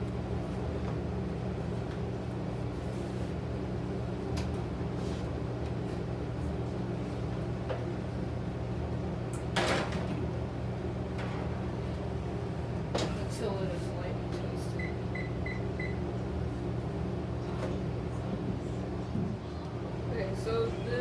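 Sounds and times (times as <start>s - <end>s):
air conditioner drone: 0.0s - 21.0s.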